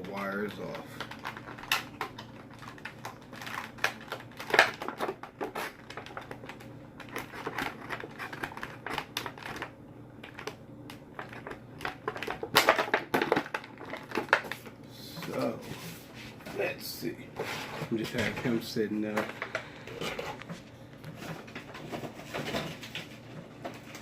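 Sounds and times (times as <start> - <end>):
plastic packaging clicks and crinkles: 0.0 - 15.6, 18.0 - 24.0.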